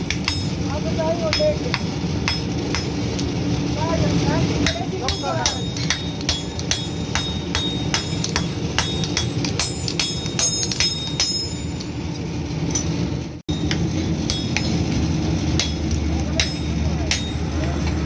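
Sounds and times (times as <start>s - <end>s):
hammer striking steel on anvil: 0.0s - 3.4s, 4.6s - 15.0s, 15.6s - 18.0s
low rumble: 11.5s - 18.0s.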